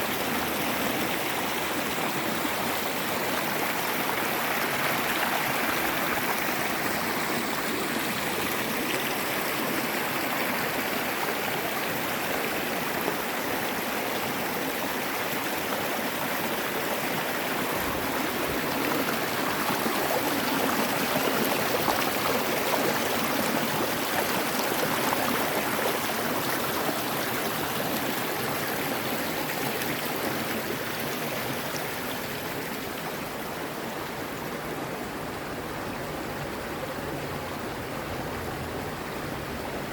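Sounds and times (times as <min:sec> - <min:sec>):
river and waterfall rushing: 0:12.1 - 0:30.8.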